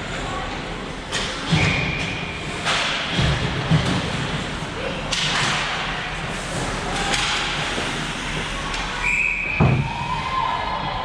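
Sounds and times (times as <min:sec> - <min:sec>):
arena crowd noise: 0:04.6 - 0:11.0
hockey stick hitting puck: 0:07.0 - 0:07.6.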